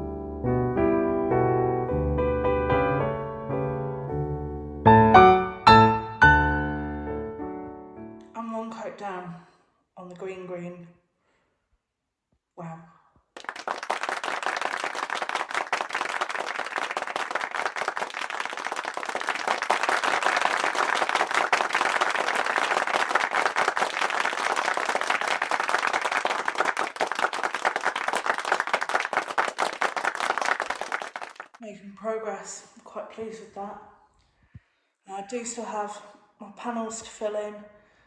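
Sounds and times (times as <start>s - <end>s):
crowd applause: 13.4s - 31.6s.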